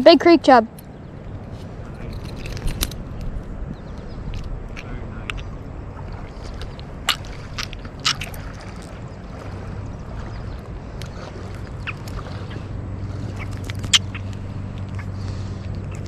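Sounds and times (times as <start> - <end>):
river water rushing: 5.8 - 16.0.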